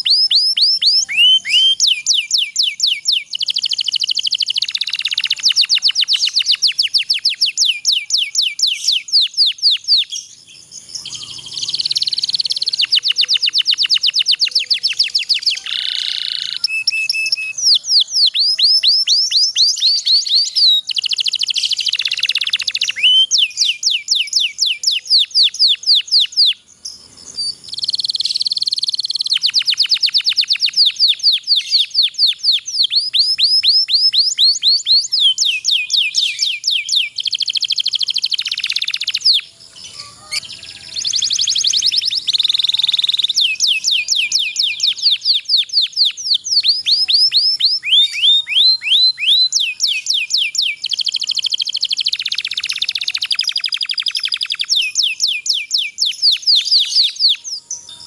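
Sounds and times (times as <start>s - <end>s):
canary singing rolling trills: 0.0s - 58.0s.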